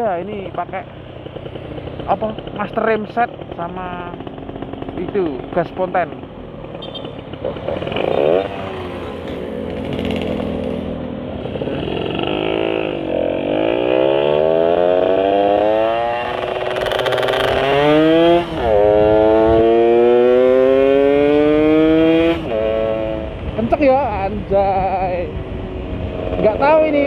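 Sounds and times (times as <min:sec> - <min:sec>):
two-stroke engine accelerating: 0:00.0 - 0:27.0.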